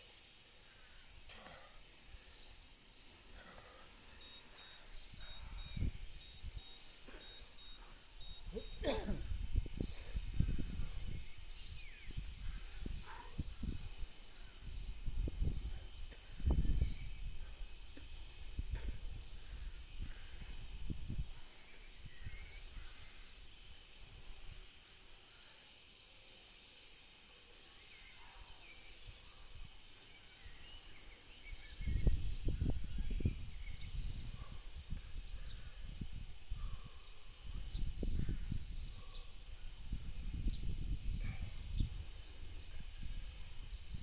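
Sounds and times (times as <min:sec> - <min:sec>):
faint high chirps: 0:01.6 - 0:18.0
low rumbling wind gusts: 0:04.9 - 0:07.0, 0:08.0 - 0:24.6, 0:31.6 - 0:44.0.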